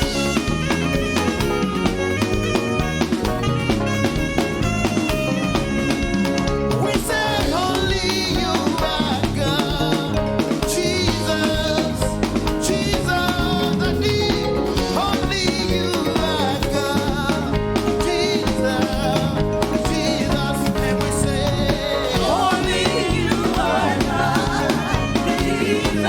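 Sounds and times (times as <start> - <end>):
full band playing: 0.0 - 26.0
voices singing: 5.7 - 26.0.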